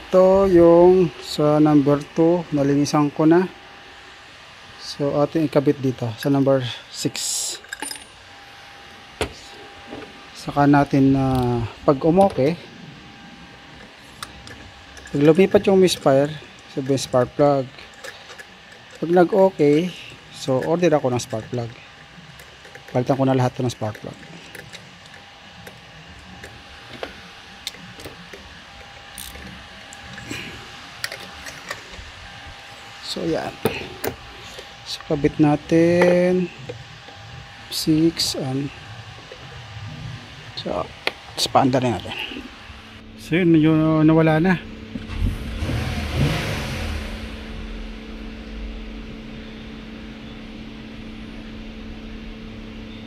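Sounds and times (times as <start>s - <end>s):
steady low hum: 0.0s - 53.0s
hand tools clicking and knocking: 13.8s - 19.8s, 20.4s - 21.8s, 22.4s - 25.8s, 26.4s - 32.0s
car engine idling: 42.0s - 53.0s.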